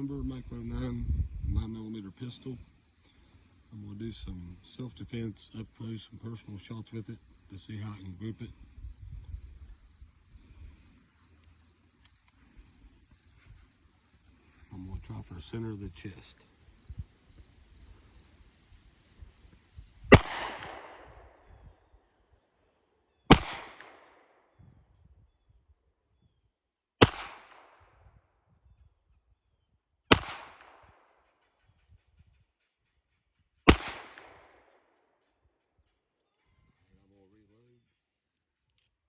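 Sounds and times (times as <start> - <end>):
insects buzzing: 0.0 - 24.0
pistol shots with echo: 20.1 - 21.5, 23.3 - 24.4, 27.0 - 27.8, 30.1 - 31.1, 33.7 - 34.7.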